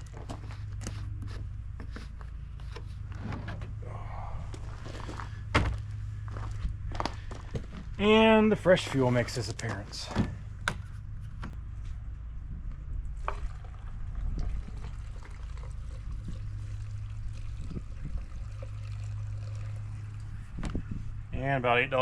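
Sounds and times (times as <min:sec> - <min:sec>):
steady low hum: 0:00.0 - 0:22.0
gasoline pouring into tank: 0:13.2 - 0:20.4.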